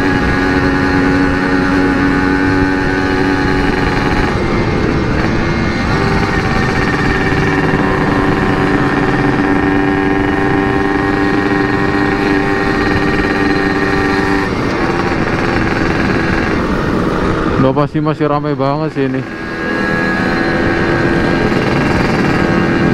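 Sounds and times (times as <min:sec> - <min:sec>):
two-stroke motorcycle engine: 0:00.0 - 0:22.9.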